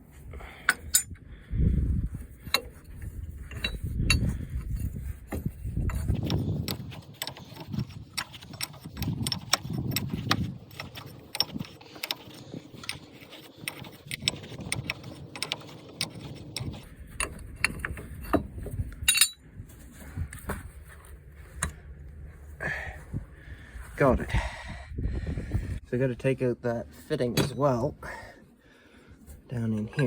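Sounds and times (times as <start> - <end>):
metal clank: 17.7 - 19.4, 27.3 - 27.8.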